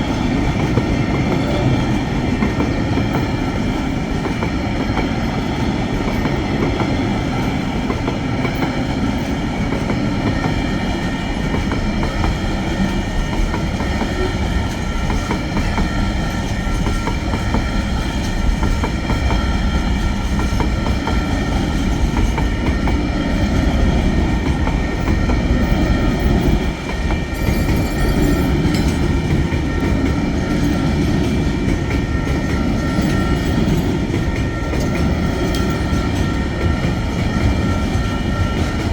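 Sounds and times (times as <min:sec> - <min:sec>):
freight train rumbling past: 0:00.0 - 0:38.9
high-pitched ringing: 0:27.3 - 0:31.4.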